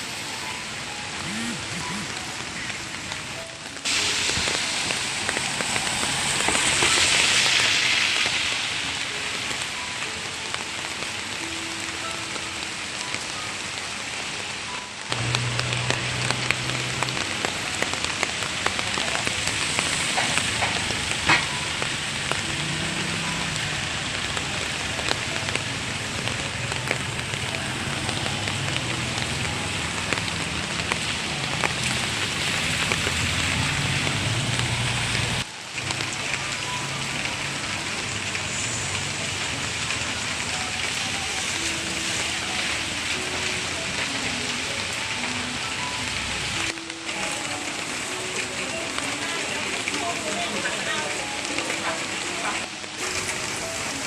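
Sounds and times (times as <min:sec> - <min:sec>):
heavy rain: 0:00.0 - 0:54.0.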